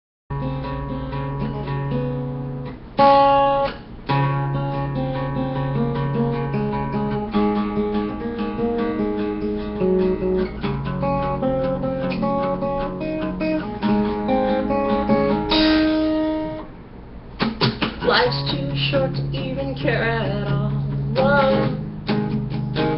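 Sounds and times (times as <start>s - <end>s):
acoustic guitar picking chords: 0.3s - 22.9s.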